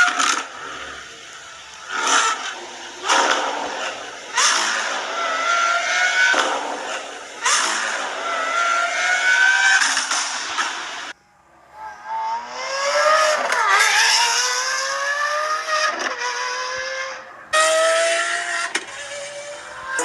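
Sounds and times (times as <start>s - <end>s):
car engine revving and accelerating: 0.0s - 20.0s.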